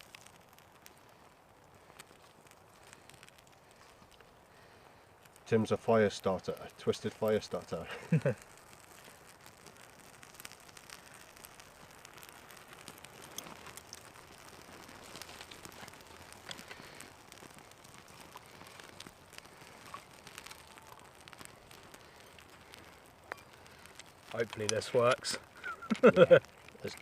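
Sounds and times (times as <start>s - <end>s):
small fire crackling and popping: 0.0s - 27.0s.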